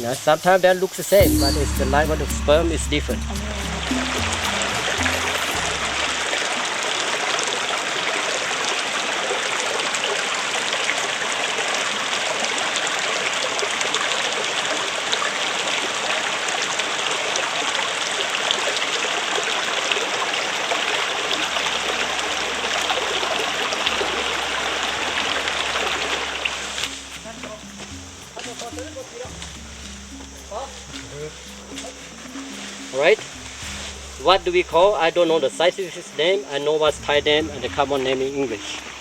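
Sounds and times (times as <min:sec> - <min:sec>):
flowing water rushing: 0:00.9 - 0:27.7.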